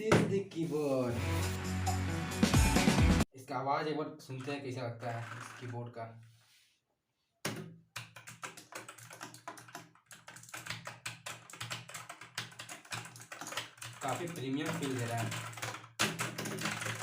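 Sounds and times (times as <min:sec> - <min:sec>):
mechanical keyboard typing: 0:08.0 - 0:17.0.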